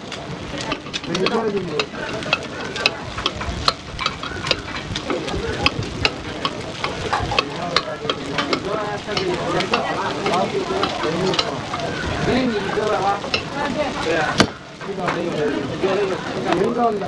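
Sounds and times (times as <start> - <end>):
faint voices: 0.0 - 17.0
sharp clicks and knocks: 0.1 - 11.8.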